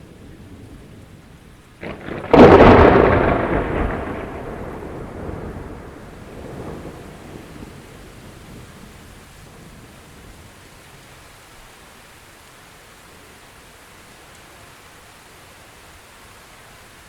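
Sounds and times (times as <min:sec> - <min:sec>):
thunder rumble: 0:00.0 - 0:10.7
steady rain falling: 0:00.0 - 0:17.0.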